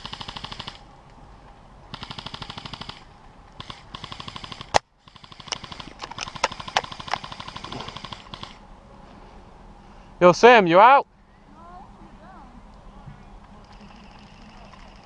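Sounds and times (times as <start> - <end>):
airsoft guns firing bursts: 0.0 - 0.8, 1.9 - 8.6.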